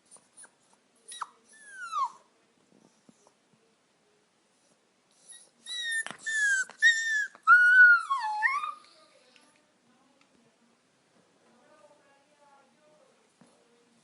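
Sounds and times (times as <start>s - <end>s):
puppy whining: 0.0s - 2.3s, 5.1s - 9.0s.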